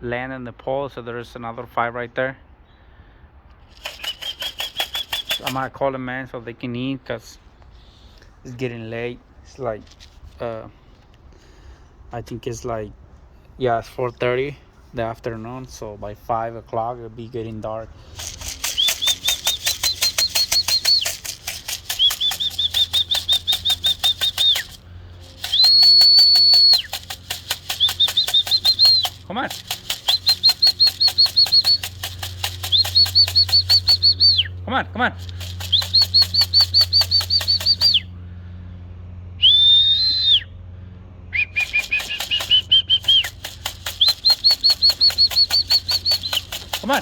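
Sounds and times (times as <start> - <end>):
sharp clicks: 3.7 - 5.6, 18.2 - 34.4, 35.2 - 38.0, 41.6 - 47.0
person whistling short high notes: 3.8 - 5.6, 18.6 - 24.8, 25.4 - 27.0, 27.7 - 29.2, 29.9 - 34.5, 35.6 - 38.0, 39.4 - 40.5, 41.4 - 47.0.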